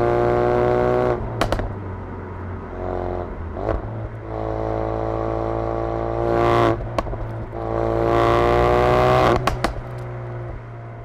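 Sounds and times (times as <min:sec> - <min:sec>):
car engine revving: 0:00.0 - 0:11.0
exhaust pops and bangs: 0:01.4 - 0:01.8, 0:06.8 - 0:07.6, 0:09.2 - 0:10.1.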